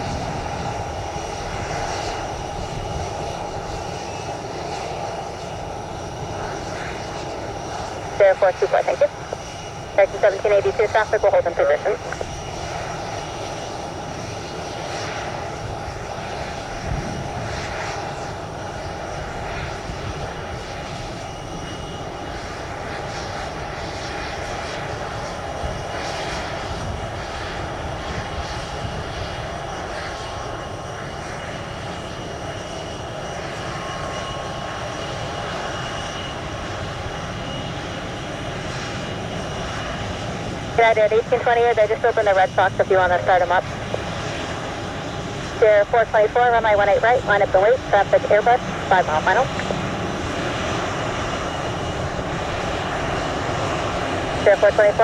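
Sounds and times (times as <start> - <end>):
jet engines running: 0.0 - 55.0
high steady whine: 8.1 - 12.3, 40.8 - 44.0, 45.6 - 49.9.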